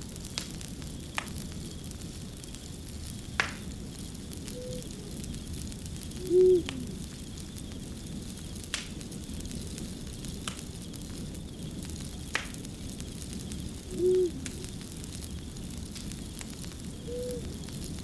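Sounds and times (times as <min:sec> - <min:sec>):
fire crackling and popping: 0:00.0 - 0:18.0
low arched call-like tones: 0:04.5 - 0:05.2, 0:06.1 - 0:07.0, 0:13.9 - 0:14.7.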